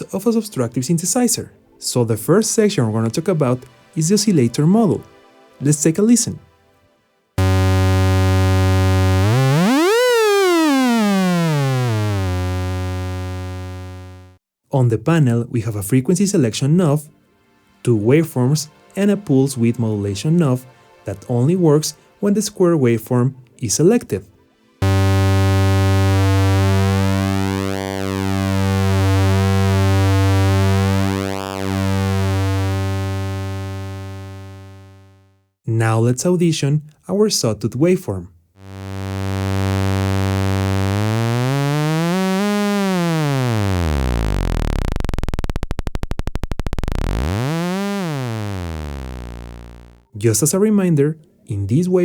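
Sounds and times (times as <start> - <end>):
buzzy synthesizer tone pitch sweep: 7.4 - 14.4, 24.8 - 35.3, 38.6 - 50.1.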